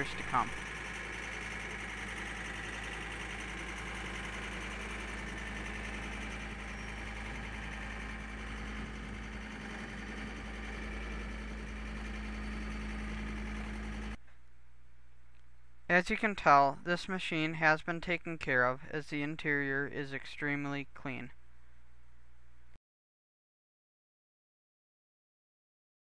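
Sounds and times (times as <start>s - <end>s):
diesel engine running: 0.0s - 14.2s.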